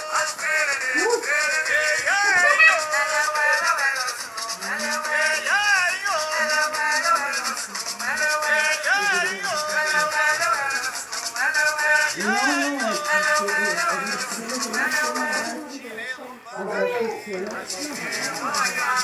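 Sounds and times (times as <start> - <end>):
shaken rattle: 0.0 - 15.6, 17.6 - 19.0
voices singing: 0.0 - 19.0.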